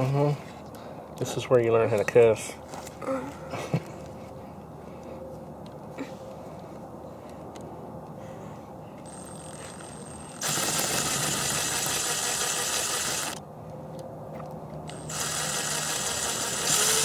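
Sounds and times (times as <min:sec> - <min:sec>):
power drill driving into wood: 0:09.1 - 0:13.4, 0:14.9 - 0:17.0.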